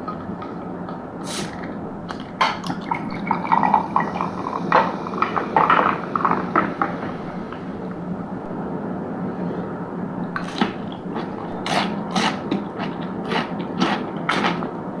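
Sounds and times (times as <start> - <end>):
wet squishy eating sounds: 10.4 - 14.8.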